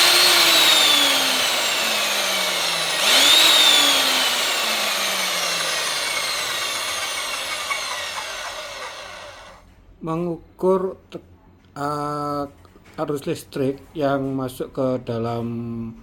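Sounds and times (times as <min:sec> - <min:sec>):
drill motor spinning up and down: 0:00.0 - 0:09.6.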